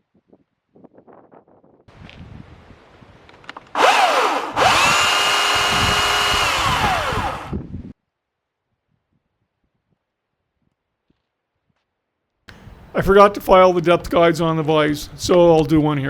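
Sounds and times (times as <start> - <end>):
electric chainsaw motor whining: 3.6 - 7.6.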